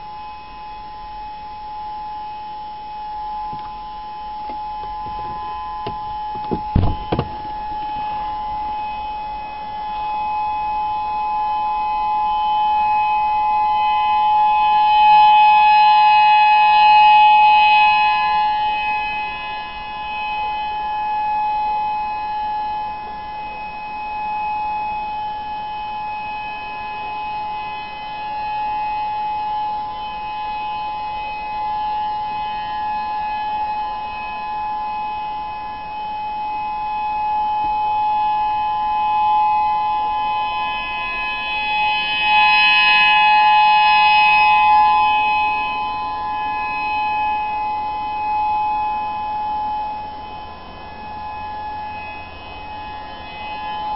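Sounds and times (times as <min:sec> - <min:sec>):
steady warning siren tone: 0:00.0 - 0:53.9
low thumps: 0:04.4 - 0:08.7.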